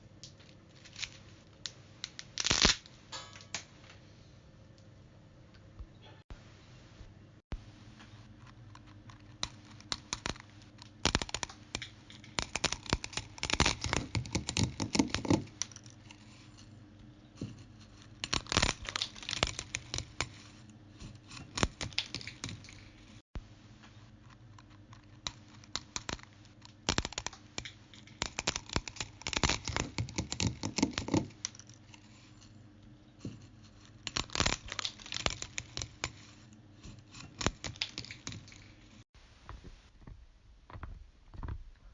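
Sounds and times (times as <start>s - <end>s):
rapid small clicks and crackles: 8.0s - 23.2s, 23.8s - 32.6s, 33.4s - 39.1s.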